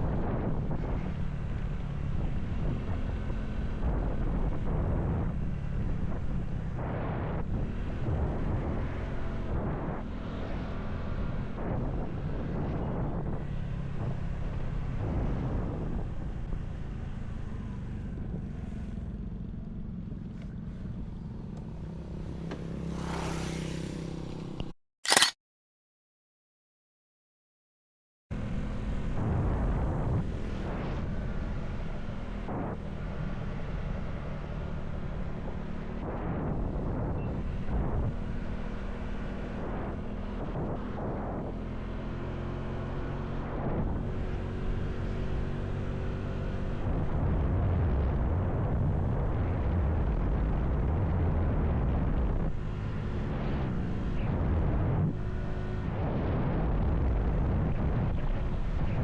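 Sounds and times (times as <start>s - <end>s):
wind rumble on microphone: 0.0s - 24.7s, 28.3s - 59.0s
motorcycle engine revving: 0.0s - 24.8s.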